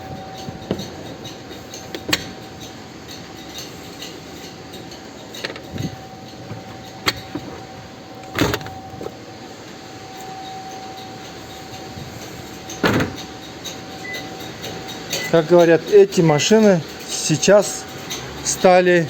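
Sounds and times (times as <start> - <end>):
clicks and knocks of seat fittings: 0.3 - 9.2, 12.6 - 15.3.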